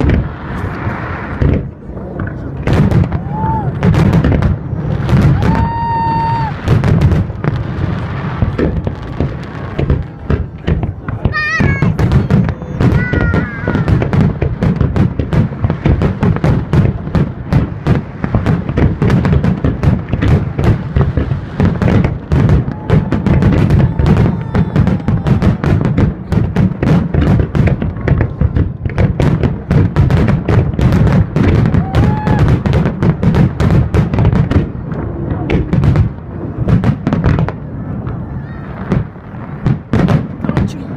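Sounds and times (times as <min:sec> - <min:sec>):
fireworks bangs and crackles: 0:00.0 - 0:40.9
deep rumble: 0:34.1 - 0:40.9.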